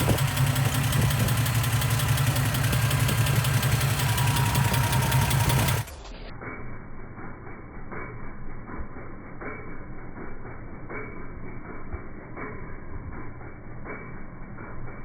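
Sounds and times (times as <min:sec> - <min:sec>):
engine ticking knock: 0:00.0 - 0:06.0
car engine idling: 0:00.0 - 0:06.3.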